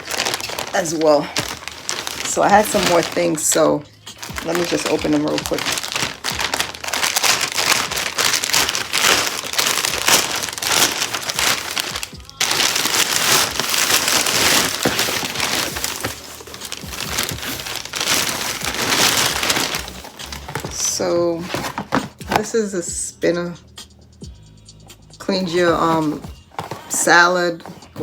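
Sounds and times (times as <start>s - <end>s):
plastic packaging tearing and crinkling: 0.0s - 3.6s, 4.2s - 22.4s.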